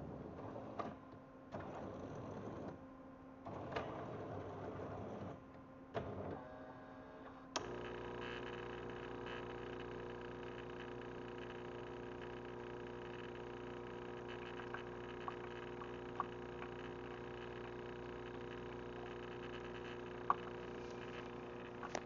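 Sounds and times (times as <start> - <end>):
motor hum with held tones: 6.0 - 22.0.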